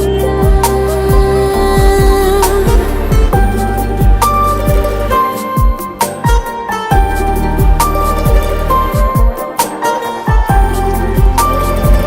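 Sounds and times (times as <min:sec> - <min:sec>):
deep kick drum hits: 0:00.5 - 0:04.9.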